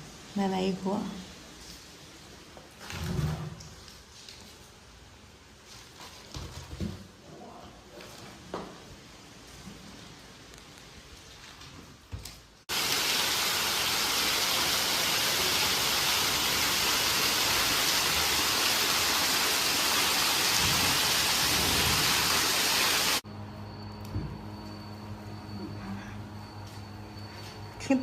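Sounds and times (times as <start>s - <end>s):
heavy rain pouring: 12.7s - 23.2s.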